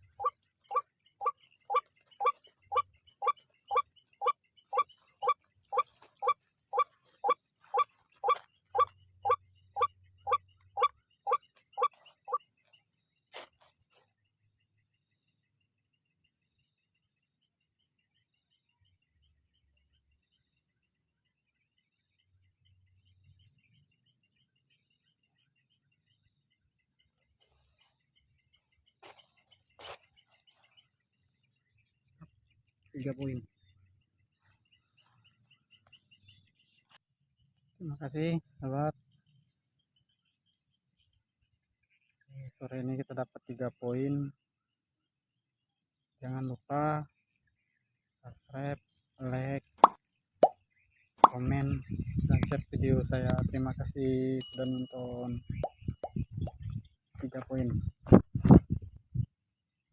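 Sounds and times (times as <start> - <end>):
waterhen croaking call: 0.0 - 12.4
high insect trill: 0.0 - 57.8.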